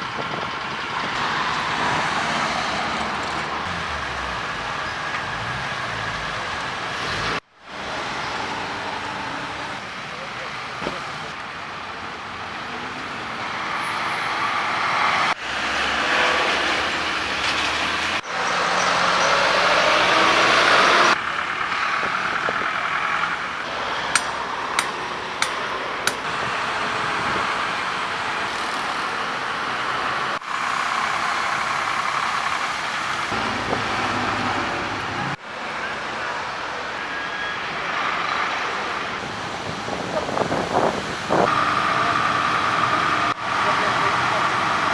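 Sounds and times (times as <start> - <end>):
vehicle engines: 0.0 - 44.9.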